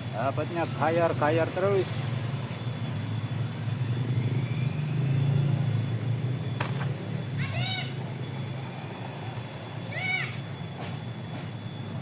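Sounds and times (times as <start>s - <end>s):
steady low hum: 0.0s - 12.0s
animal call: 7.4s - 8.0s.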